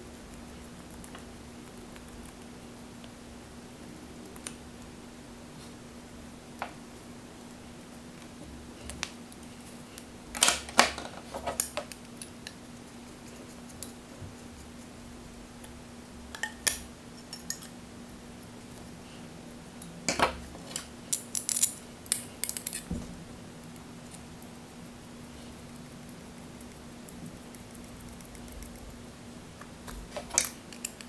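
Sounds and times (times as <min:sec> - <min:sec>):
faint steady hum: 0:00.0 - 0:31.0
small metal parts clinking: 0:20.7 - 0:22.9.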